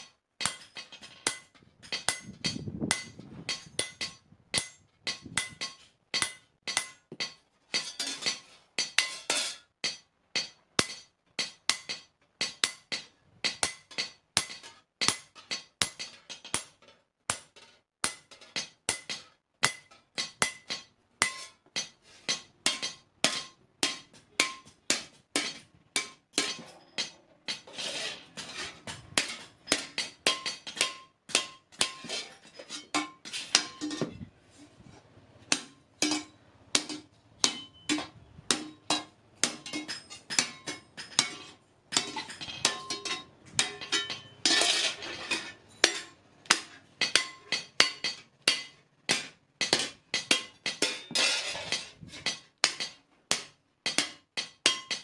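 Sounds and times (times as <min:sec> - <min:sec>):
hammer striking iron on anvil: 0:00.0 - 0:27.7, 0:28.3 - 0:34.3, 0:35.5 - 0:55.0.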